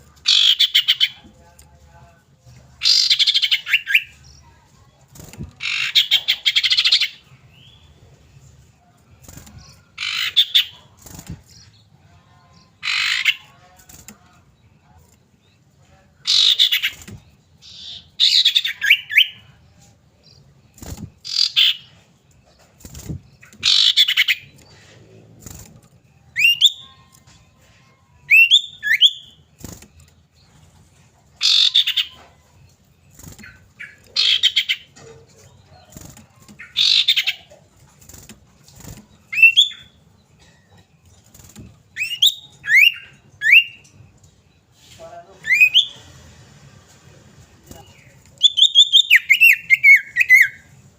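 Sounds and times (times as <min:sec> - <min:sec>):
bird rasping calls: 0:36.6 - 0:37.5.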